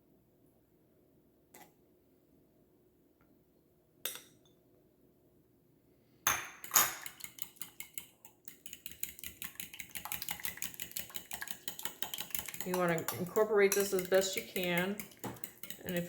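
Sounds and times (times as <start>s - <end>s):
fork whisking in a bowl: 6.6s - 16.0s.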